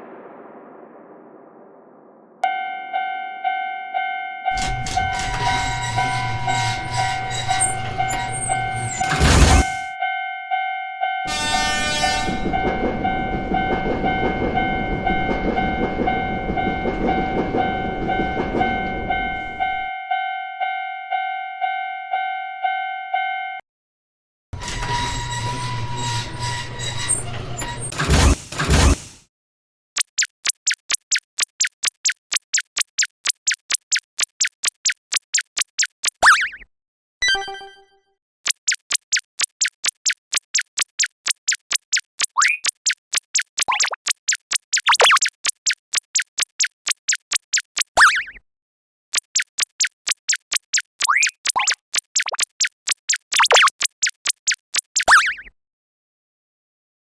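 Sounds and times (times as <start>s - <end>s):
railroad crossing bell ringing: 2.5s - 9.0s, 9.8s - 23.6s
train sound: 4.5s - 9.9s, 11.3s - 19.9s, 24.6s - 29.2s
train horn: 11.2s - 12.8s
train rumbling past: 11.3s - 19.9s.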